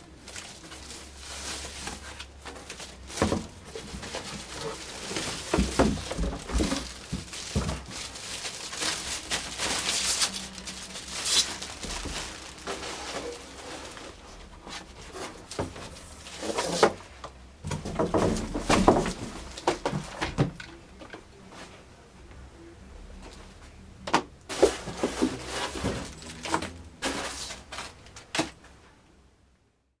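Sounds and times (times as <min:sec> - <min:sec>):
wrapping rustling and crinkling: 0:00.0 - 0:17.0, 0:24.5 - 0:28.6.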